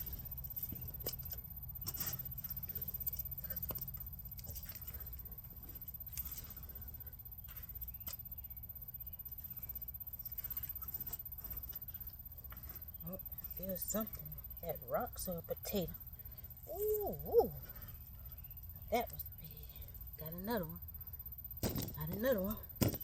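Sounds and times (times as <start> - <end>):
dirt and stones clicking: 21.6 - 23.0.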